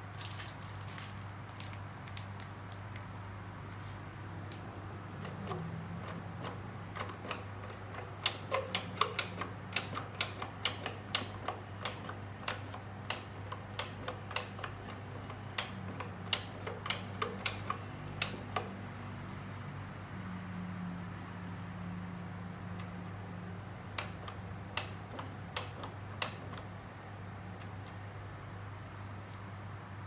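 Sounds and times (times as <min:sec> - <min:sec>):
sharp mechanical clicks: 0:04.5 - 0:18.8, 0:23.8 - 0:26.7.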